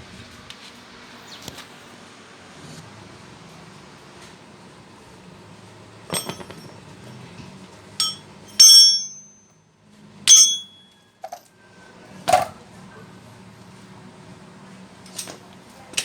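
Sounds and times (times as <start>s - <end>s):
metal parts clanking together: 6.1s - 7.2s, 8.0s - 9.2s, 10.3s - 11.5s, 12.3s - 12.6s.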